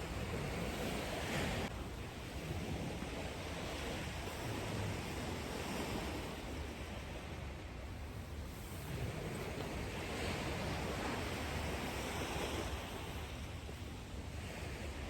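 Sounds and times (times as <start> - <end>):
small waves washing on shore: 0.0 - 15.0
wind rumble on microphone: 0.0 - 15.0.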